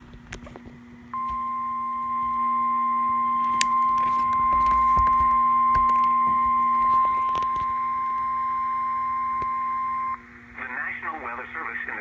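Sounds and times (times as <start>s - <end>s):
steady emergency alert tone: 1.2s - 10.3s.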